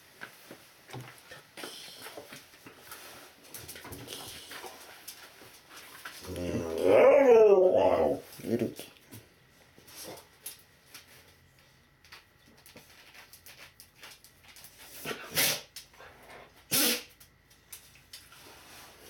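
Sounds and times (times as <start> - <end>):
dog sneezing: 15.0 - 15.8, 16.7 - 17.2.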